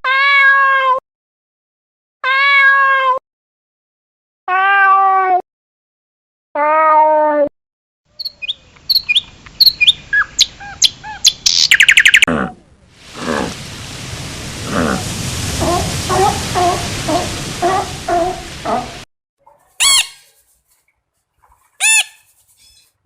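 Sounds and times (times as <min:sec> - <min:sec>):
meow-like animal calls: 0:04.5 - 0:05.4
bird chirps: 0:08.2 - 0:12.3.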